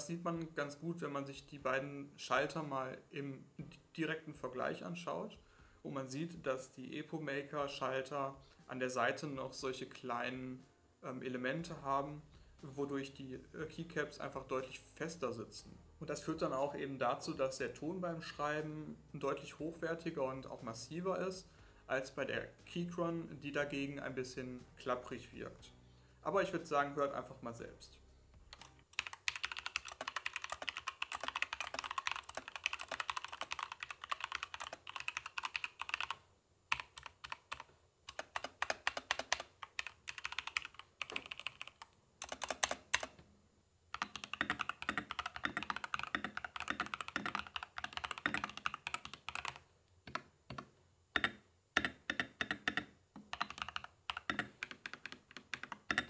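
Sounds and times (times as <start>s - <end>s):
mechanical keyboard typing: 28.5s - 43.2s, 43.9s - 56.0s.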